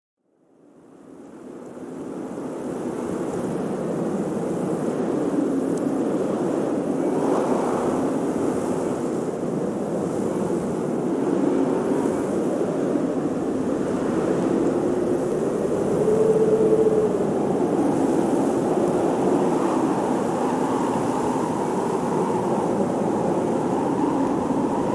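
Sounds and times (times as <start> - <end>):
faint wavering wind howl: 3.4 - 24.9
blizzard wind gusting: 6.0 - 24.9.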